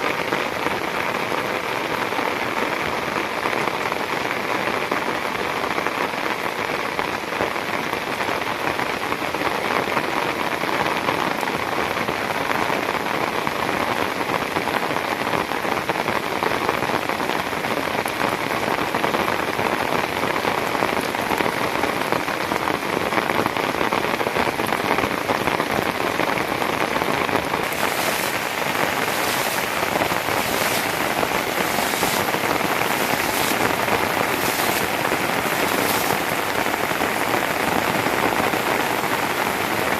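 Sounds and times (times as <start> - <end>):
crisp pulsing rain layer: 16.2 - 39.9
steady rain hiss: 16.6 - 39.9.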